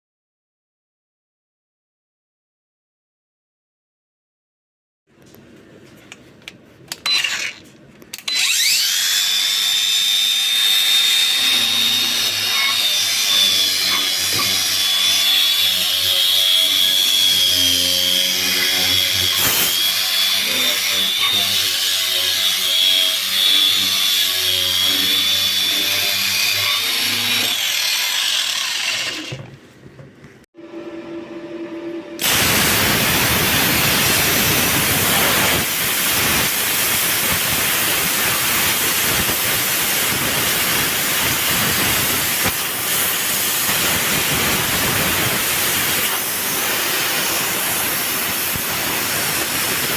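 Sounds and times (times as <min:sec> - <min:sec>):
plasma cutter hissing: 0:11.6 - 0:17.7, 0:18.8 - 0:21.7, 0:32.2 - 0:49.9.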